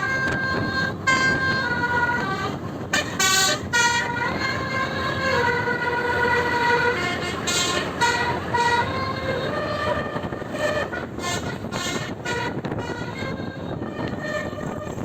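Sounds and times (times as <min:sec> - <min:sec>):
bus musical horn melody: 0:00.0 - 0:15.0.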